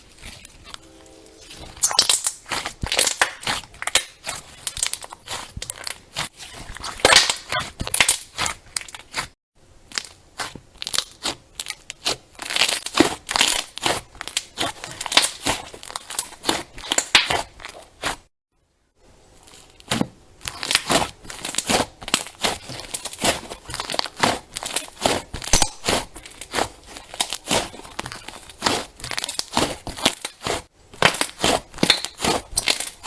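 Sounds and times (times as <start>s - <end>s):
crunchy slime squeezed by hand: 6.8s - 9.3s.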